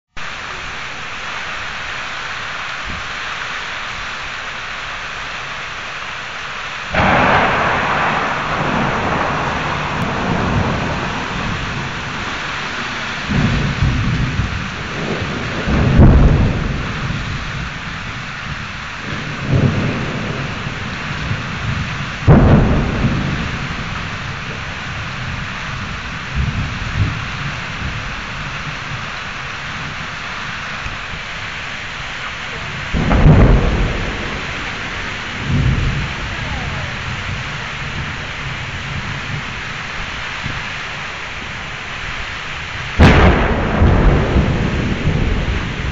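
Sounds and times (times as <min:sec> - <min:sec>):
steady rain: 0:00.1 - 0:45.9
rolling thunder rumbles: 0:06.7 - 0:45.9
thunder clap: 0:06.9 - 0:45.9.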